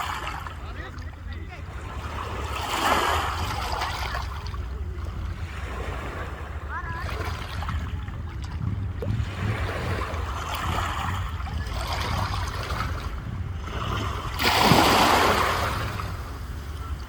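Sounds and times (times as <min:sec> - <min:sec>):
sea waves on the shore: 0:00.0 - 0:17.0
wave breaking and washing back: 0:00.0 - 0:17.0
steady low rumble: 0:03.4 - 0:17.0.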